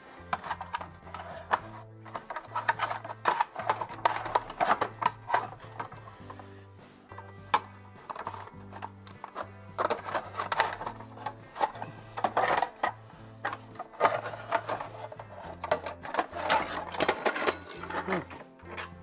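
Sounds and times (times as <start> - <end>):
background music with bass line: 0.0 - 19.0
metallic clicks and scraping: 0.0 - 19.0.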